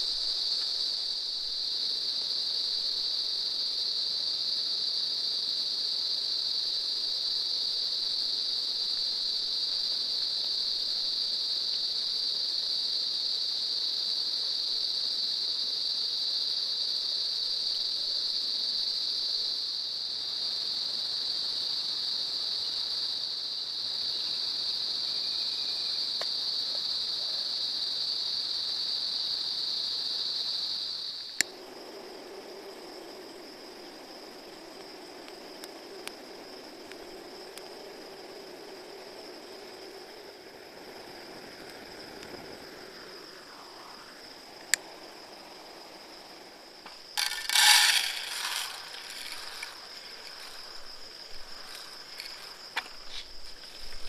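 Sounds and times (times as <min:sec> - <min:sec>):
insects shrilling: 0:30.4 - 0:54.0.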